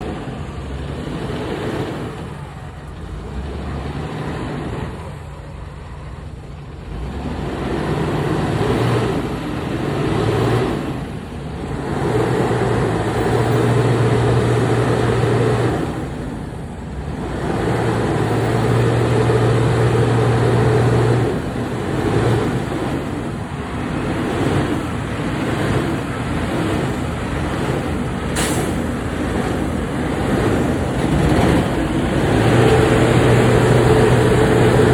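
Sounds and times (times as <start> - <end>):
diesel truck engine revving: 0.0 - 34.9
short hiss: 28.4 - 28.8.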